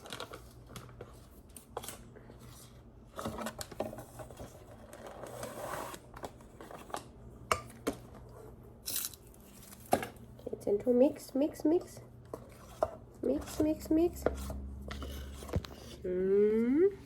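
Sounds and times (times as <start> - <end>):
soft scraping and rustling: 12.3 - 16.0.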